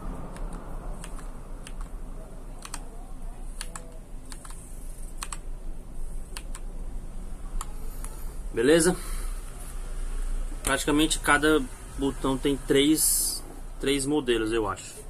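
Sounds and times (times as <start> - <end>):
keyboard key clicks: 3.6 - 4.6.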